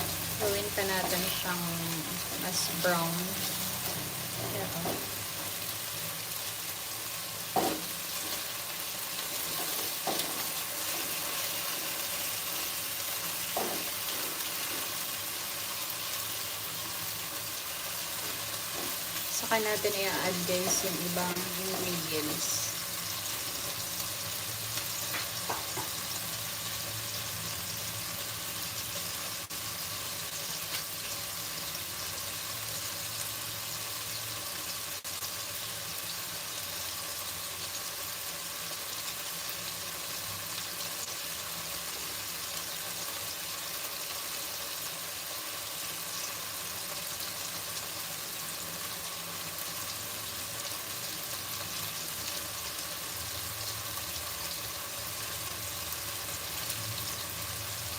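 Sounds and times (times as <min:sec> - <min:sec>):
chicken frying in hot oil: 0:00.0 - 0:57.9.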